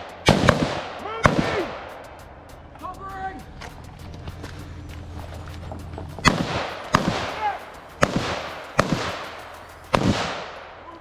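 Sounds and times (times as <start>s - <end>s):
rifle shots with echo: 0.0s - 2.1s, 6.2s - 11.0s.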